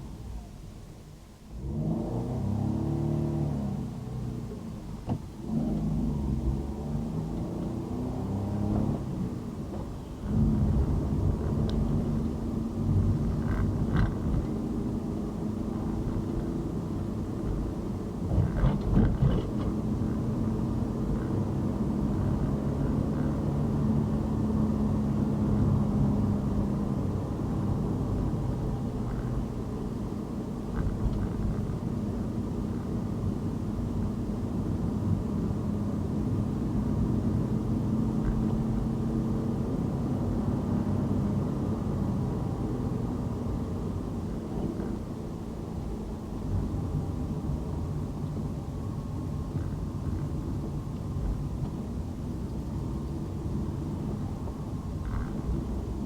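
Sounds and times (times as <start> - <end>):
vehicle road and engine rumble: 0.0 - 56.0
constant hum: 3.7 - 56.0
vehicle bumps: 13.0 - 14.7, 17.4 - 20.4.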